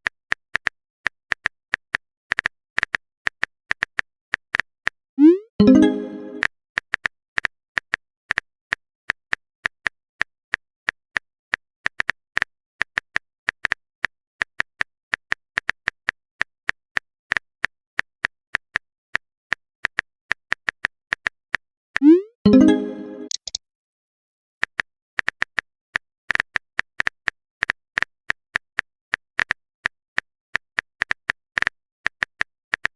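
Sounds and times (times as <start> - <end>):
phone keyboard typing clicks: 22.0 - 23.6.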